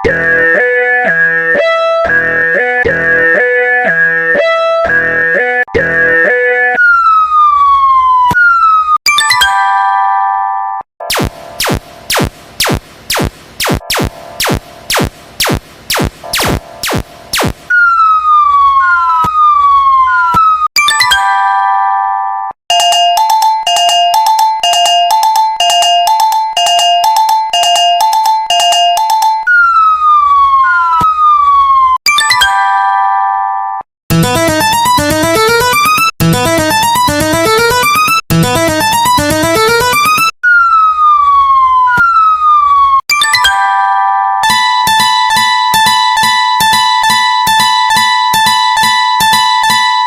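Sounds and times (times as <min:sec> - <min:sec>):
falling whistle tones with chimes: 0:17.7 - 0:19.5, 0:28.5 - 0:31.4
sharp bell-like dings: 0:22.7 - 0:29.5
two-note alarm: 0:22.7 - 0:31.0, 0:34.1 - 0:41.0, 0:43.1 - 0:50.0.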